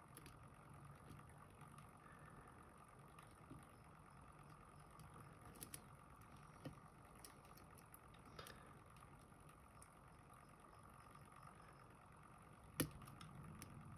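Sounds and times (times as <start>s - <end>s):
faint room hum: 0.0s - 13.9s
lock pick clicks: 12.8s - 13.3s.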